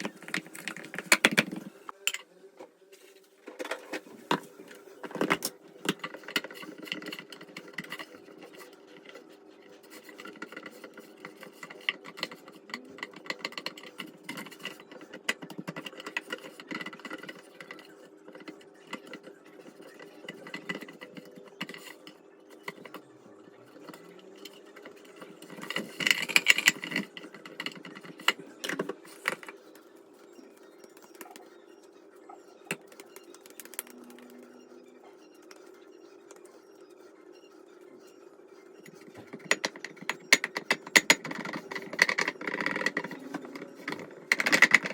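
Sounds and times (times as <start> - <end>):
utensils and dishes clinking: 0.0 - 2.3, 3.5 - 23.1, 23.7 - 29.8, 38.8 - 44.9
appliance humming: 0.0 - 2.4.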